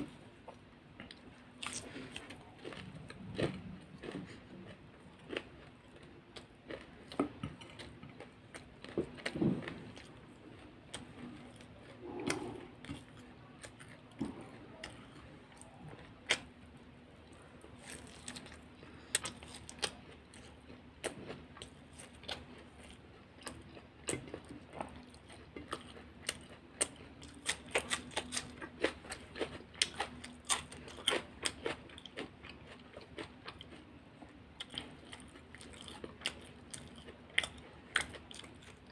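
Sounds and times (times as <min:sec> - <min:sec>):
faint steady hum: 0:00.0 - 0:38.9
person chewing crunchy food: 0:00.0 - 0:38.9.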